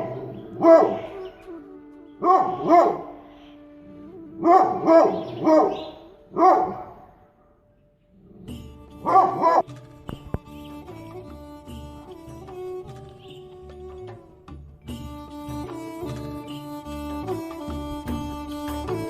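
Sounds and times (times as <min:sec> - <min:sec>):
dog barking: 0:00.0 - 0:01.2, 0:02.2 - 0:03.1, 0:04.4 - 0:07.6, 0:09.0 - 0:09.6
background music: 0:00.0 - 0:19.0.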